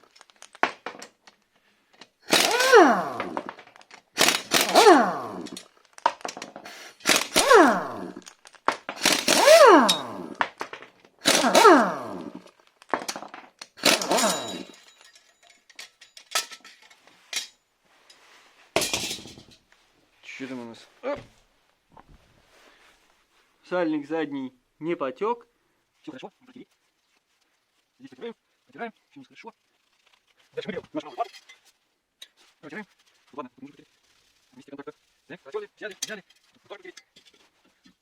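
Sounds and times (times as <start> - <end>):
pneumatic impact wrench hammering: 2.2 - 5.7, 6.6 - 8.2, 8.9 - 10.4, 11.2 - 12.5, 13.8 - 14.8.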